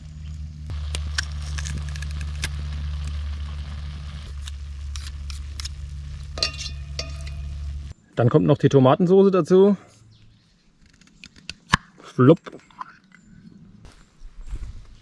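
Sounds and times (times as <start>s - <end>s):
sharp crackles: 0.0s - 8.0s, 10.7s - 12.6s
campfire low rumble: 0.0s - 11.3s
vegetables frying in a pot: 0.7s - 7.9s
scraping in a pot: 4.3s - 7.9s.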